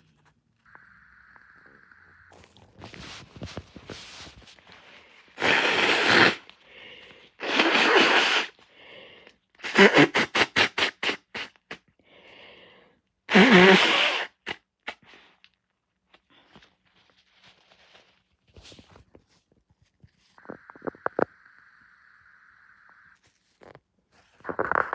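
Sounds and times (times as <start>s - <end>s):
short breaths: 4.7s - 7.4s, 8.4s - 9.4s, 12.0s - 13.1s
person blowing nose: 5.3s - 8.6s, 9.6s - 11.8s, 13.3s - 15.4s, 24.4s - 24.9s.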